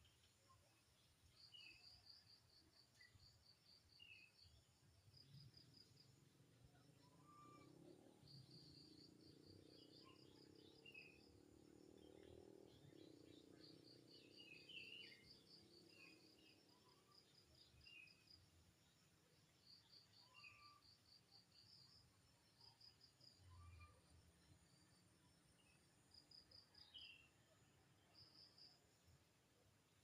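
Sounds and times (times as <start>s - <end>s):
insects chirping in trills: 0.0s - 30.0s
faint low rumble: 5.2s - 17.7s.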